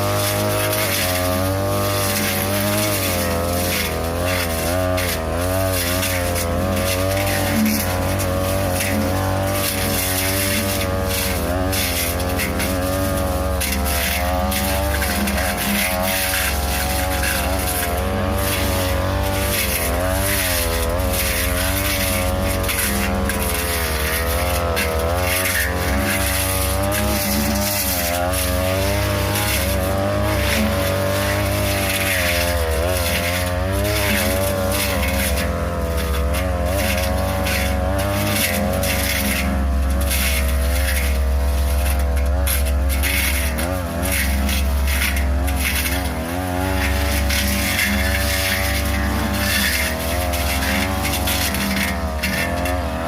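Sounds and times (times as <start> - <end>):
brush cutter engine: 0.0 - 53.0.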